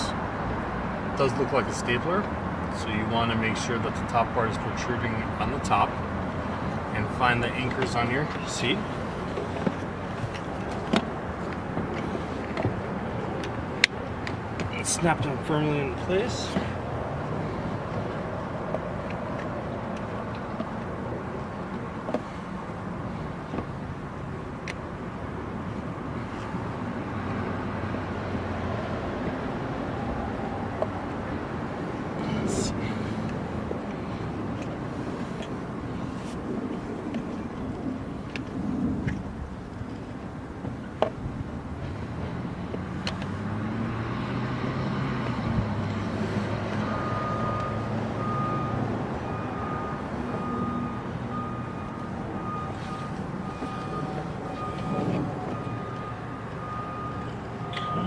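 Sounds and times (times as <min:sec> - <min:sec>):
low engine hum: 0:00.0 - 0:58.0
low rumbling background noise: 0:00.0 - 0:58.0
electronic warning beeps: 0:46.9 - 0:58.0.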